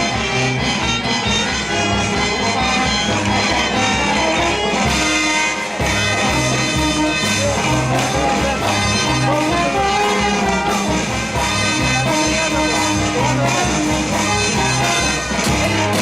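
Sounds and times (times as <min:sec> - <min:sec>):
band playing dance music: 0:00.0 - 0:16.0
bass line: 0:00.0 - 0:16.0
person singing: 0:06.9 - 0:16.0.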